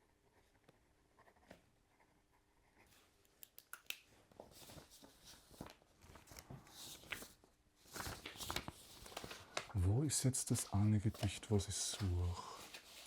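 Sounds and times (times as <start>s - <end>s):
paper sheets rustling: 4.4s - 13.0s.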